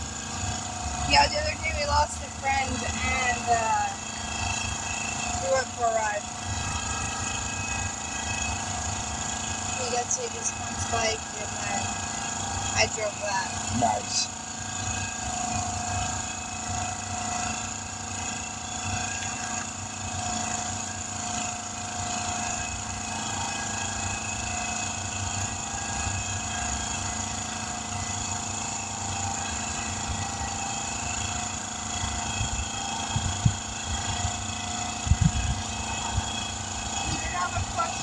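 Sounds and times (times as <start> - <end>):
engine running: 0.0 - 38.0.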